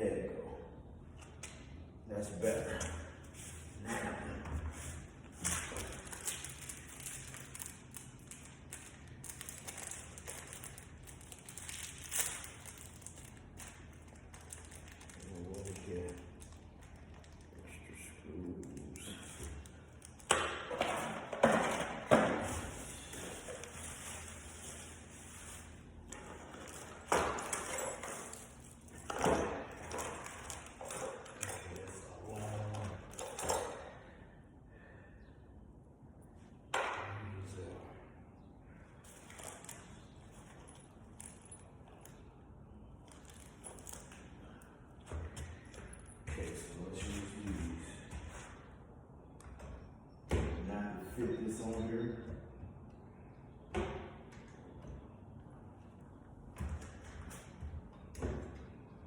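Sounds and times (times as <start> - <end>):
metal parts clinking and knocking: 26.1 - 31.9.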